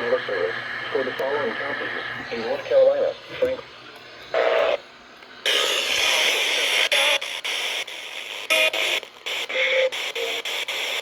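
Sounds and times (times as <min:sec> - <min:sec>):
broadcast voice: 0:00.0 - 0:03.7
radio static hiss: 0:00.0 - 0:11.0.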